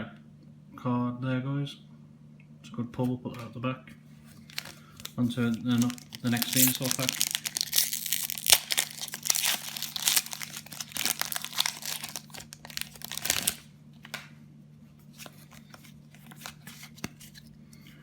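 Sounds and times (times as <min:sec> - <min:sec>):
foil wrapper tearing and crinkling: 0:04.4 - 0:13.7.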